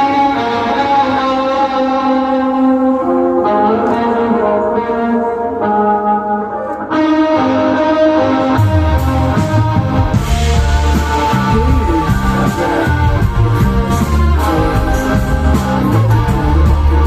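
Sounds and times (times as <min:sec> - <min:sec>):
effects-laden electric guitar: 0:00.0 - 0:17.0
bass and drums: 0:08.6 - 0:17.0.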